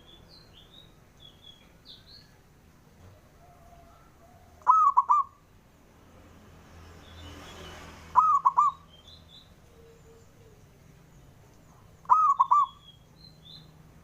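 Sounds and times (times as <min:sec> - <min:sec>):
small birds chirping: 0:00.0 - 0:14.0
dove cooing: 0:03.2 - 0:05.4, 0:08.2 - 0:08.8, 0:12.0 - 0:12.8.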